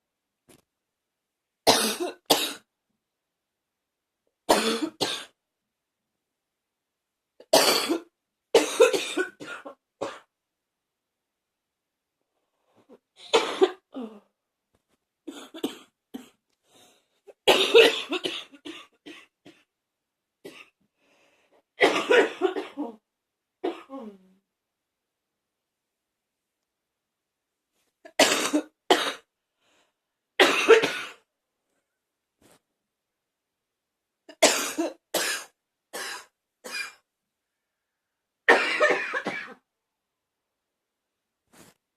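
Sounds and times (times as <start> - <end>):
person coughing harshly: 1.7 - 2.6, 4.5 - 5.4, 7.5 - 10.3, 13.2 - 14.0, 15.3 - 16.4, 17.4 - 19.7, 21.8 - 23.0, 28.1 - 29.3, 30.4 - 31.3, 34.3 - 37.0, 38.5 - 39.6.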